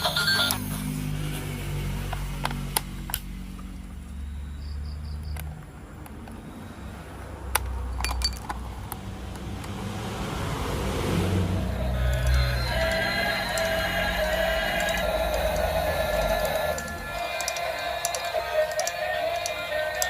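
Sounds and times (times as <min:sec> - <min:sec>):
toy train motor humming: 0:11.6 - 0:20.0.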